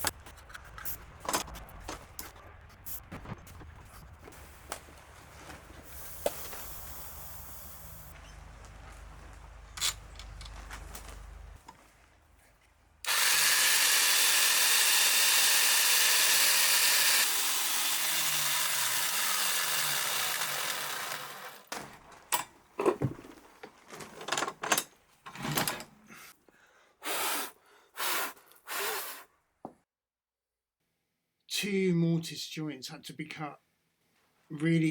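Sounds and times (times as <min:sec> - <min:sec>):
electric power tool running: 0:13.1 - 0:21.7
knocks and clicks of handling wood: 0:21.7 - 0:25.4.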